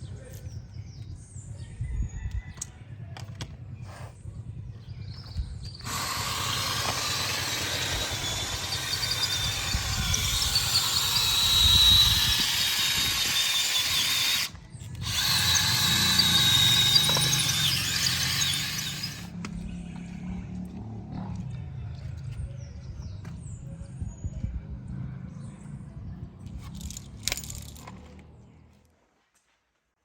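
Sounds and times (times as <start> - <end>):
power drill whining: 5.8 - 19.3.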